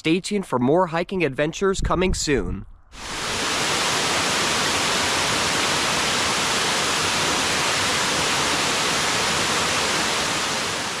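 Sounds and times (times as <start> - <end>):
waterfall roaring: 3.0 - 11.0.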